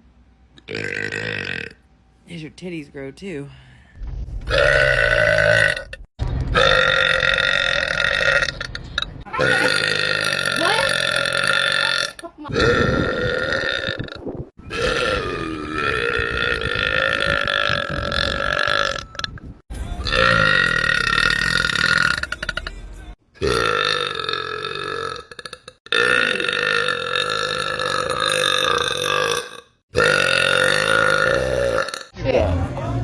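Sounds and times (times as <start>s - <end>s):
woman belching: 0.6s - 1.8s, 6.6s - 19.3s, 20.0s - 22.7s, 23.4s - 32.1s.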